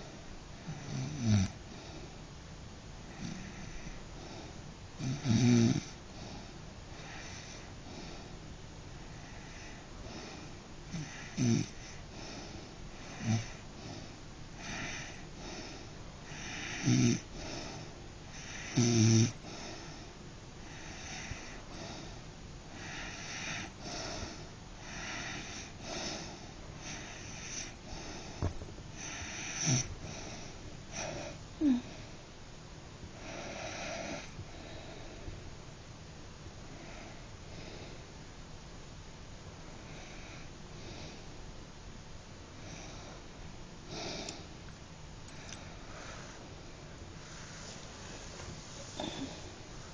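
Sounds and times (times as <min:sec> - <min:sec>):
person snoring: 0:22.8 - 0:32.0, 0:48.8 - 0:49.6
loud snorts: 0:28.4 - 0:30.4.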